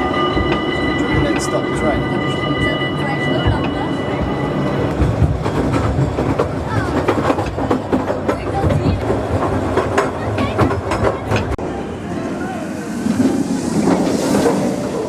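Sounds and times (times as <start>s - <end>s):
train wheels clattering on rails: 0.0s - 11.6s.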